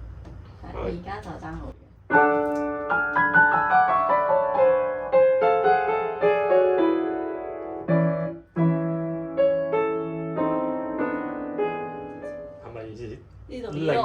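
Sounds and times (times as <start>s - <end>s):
grand piano playing: 2.1s - 12.8s.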